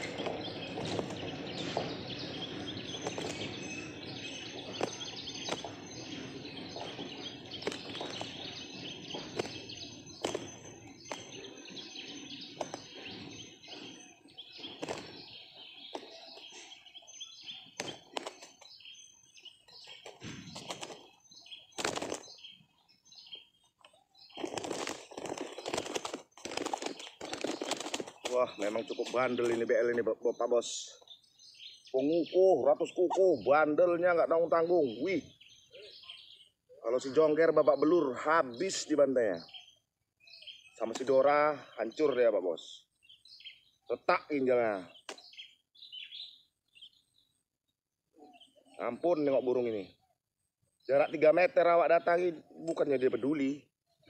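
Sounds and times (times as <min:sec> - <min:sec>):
wings flapping: 0:00.0 - 0:16.9, 0:17.5 - 0:18.8, 0:19.6 - 0:22.6, 0:24.2 - 0:30.0
bird chirps: 0:00.0 - 0:54.0.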